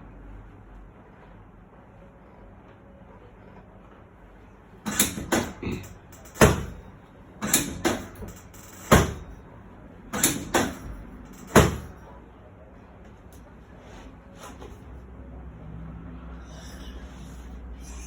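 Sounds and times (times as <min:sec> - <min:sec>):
percussive slaps and thuds: 0:06.4 - 0:06.8, 0:08.9 - 0:09.3, 0:11.5 - 0:11.9.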